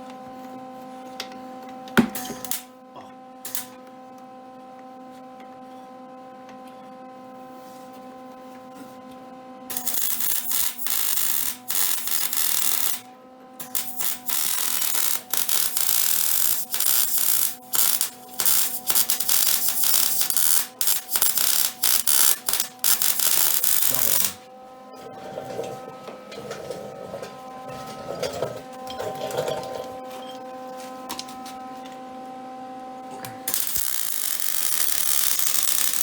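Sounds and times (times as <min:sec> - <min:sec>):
welder arc crackling: 0:09.7 - 0:13.0, 0:13.6 - 0:24.4, 0:33.5 - 0:36.0.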